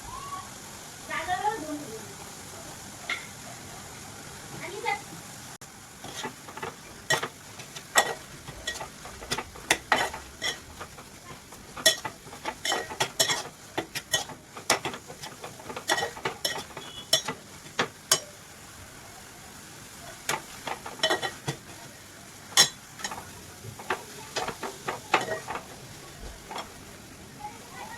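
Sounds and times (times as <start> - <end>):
faint frying sizzle: 0.0 - 27.9
clinks against pan: 3.1 - 3.4, 6.0 - 18.4, 20.3 - 21.7, 22.5 - 25.8, 26.5 - 26.8
spoon scraping frying pan: 6.0 - 18.4, 20.2 - 27.0.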